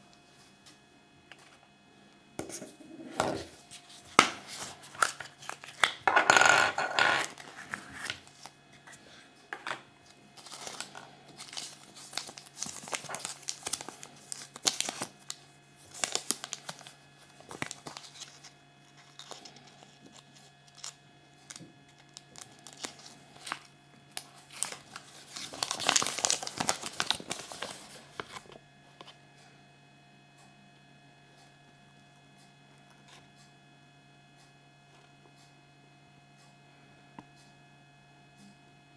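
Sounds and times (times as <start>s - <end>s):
foil wrapper crinkling and tearing: 3.5s - 6.1s, 7.2s - 9.0s, 10.0s - 28.6s.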